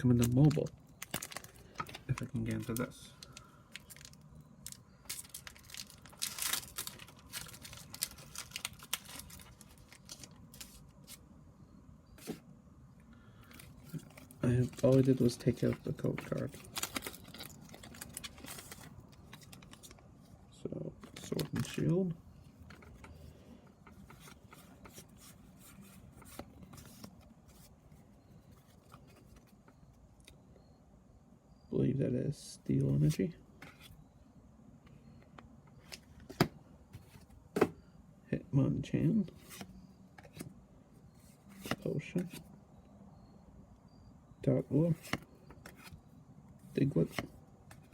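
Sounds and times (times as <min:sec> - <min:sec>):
plastic and foil packaging rustling: 0:00.0 - 0:11.2, 0:13.4 - 0:20.0.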